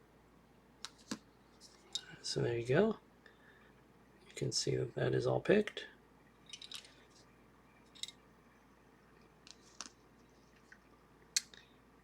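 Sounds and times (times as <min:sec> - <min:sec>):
small metal parts clicking: 0:06.5 - 0:07.0, 0:07.9 - 0:08.2.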